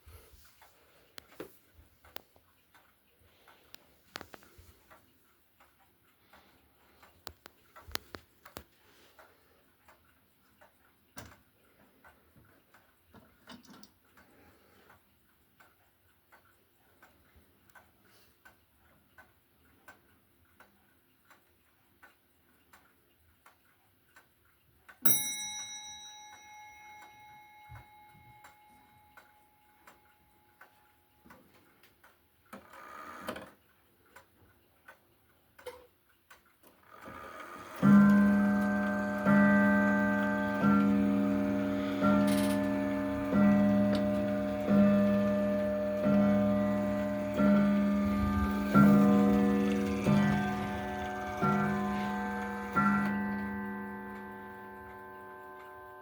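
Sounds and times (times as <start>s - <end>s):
clock ticking faintly: 0.0s - 56.0s
clock striking ringing note: 25.1s - 30.3s, 37.8s - 56.0s.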